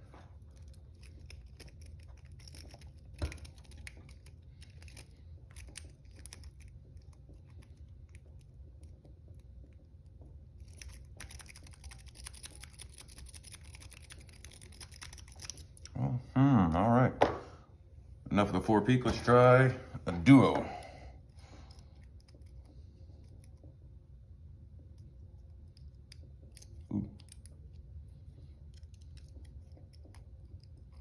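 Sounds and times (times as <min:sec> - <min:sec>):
lock-pick scraping and clicking: 0:00.5 - 0:08.2, 0:10.6 - 0:15.9, 0:25.6 - 0:27.5, 0:28.6 - 0:31.0.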